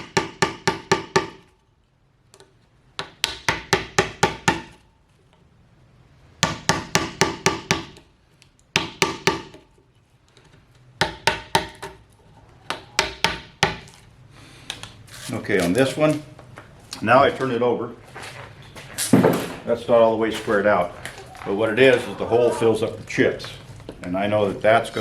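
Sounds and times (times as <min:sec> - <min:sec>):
hammer striking chisel into wood: 0:00.0 - 0:01.4, 0:03.0 - 0:04.8, 0:06.4 - 0:08.0, 0:08.7 - 0:09.6, 0:11.0 - 0:12.0, 0:12.7 - 0:13.8.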